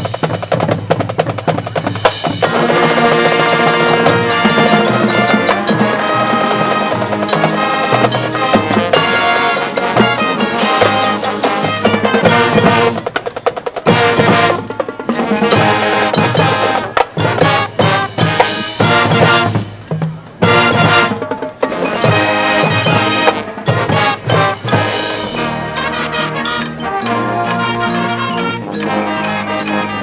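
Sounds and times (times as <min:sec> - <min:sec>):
marching band playing: 0:00.0 - 0:30.0.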